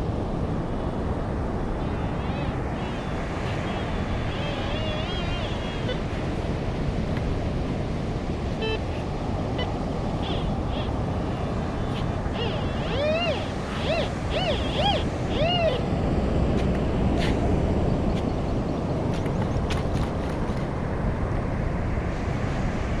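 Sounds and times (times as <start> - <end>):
surf: 0.0 - 18.2
wind noise: 0.0 - 23.0.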